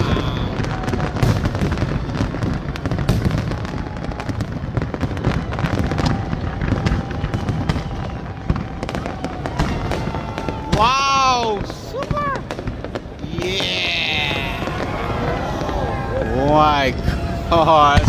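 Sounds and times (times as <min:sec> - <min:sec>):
fireworks bangs: 0:00.0 - 0:18.0
fireworks crackling: 0:00.0 - 0:18.0.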